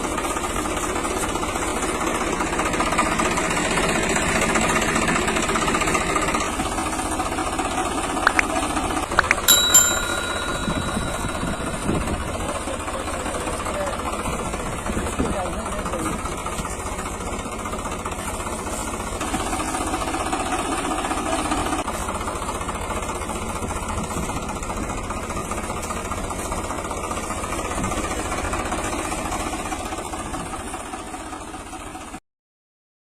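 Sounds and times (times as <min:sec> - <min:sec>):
toy backhoe motor running: 0:00.1 - 0:10.0.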